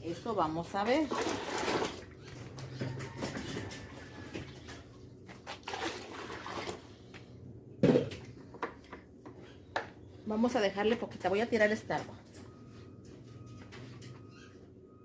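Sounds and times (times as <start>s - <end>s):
water sloshing and dripping: 0.3s - 9.0s.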